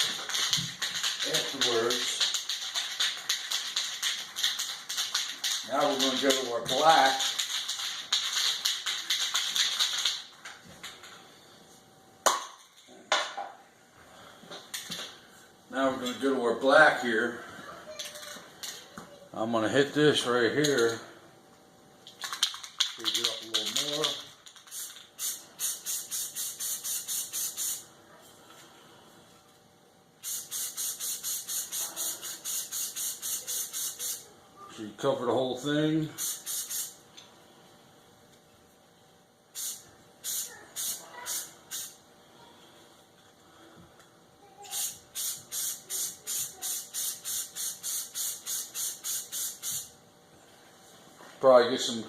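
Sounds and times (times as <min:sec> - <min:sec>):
spray can ball rattling: 0:00.0 - 0:10.4, 0:22.1 - 0:27.8, 0:30.2 - 0:34.2, 0:36.2 - 0:37.0, 0:39.6 - 0:42.0, 0:44.7 - 0:49.9.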